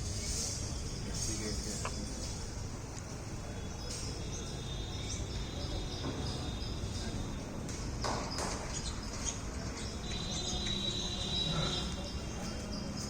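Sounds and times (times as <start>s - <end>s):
birds chirping: 0.0s - 13.0s
steady background noise: 0.0s - 13.0s.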